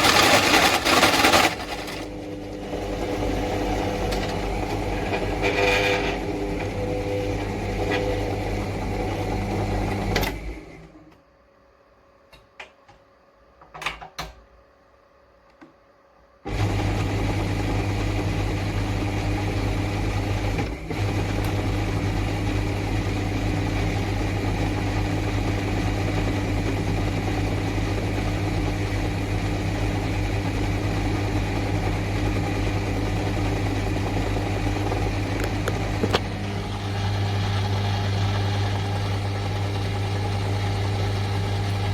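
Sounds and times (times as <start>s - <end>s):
drill press motor humming: 1.9s - 11.0s, 20.5s - 41.9s.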